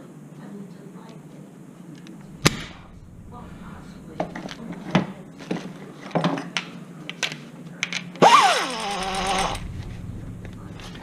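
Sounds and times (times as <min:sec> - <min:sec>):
pneumatic wrench whine: 0:08.2 - 0:11.0.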